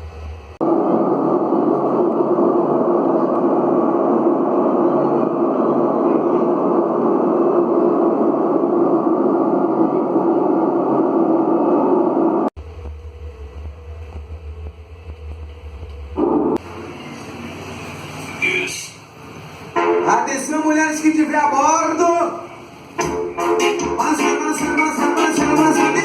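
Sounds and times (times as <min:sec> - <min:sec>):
test noise through car speakers: 0:12.6 - 0:16.7, 0:23.0 - 0:26.0
low bass hum: 0:12.6 - 0:17.5.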